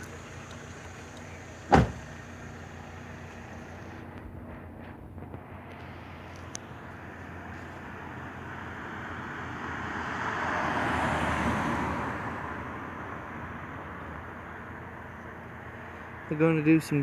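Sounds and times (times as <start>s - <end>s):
vehicle passing by: 5.5s - 14.4s.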